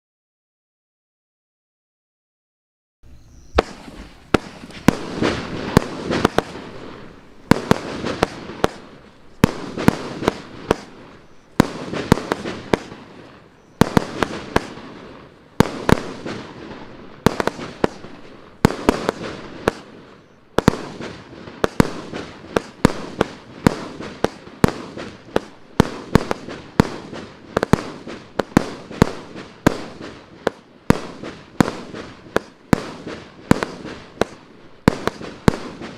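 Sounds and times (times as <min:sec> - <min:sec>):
shells bursting: 0:03.4 - 0:35.9
firework cake shots: 0:03.5 - 0:16.6, 0:17.2 - 0:35.9.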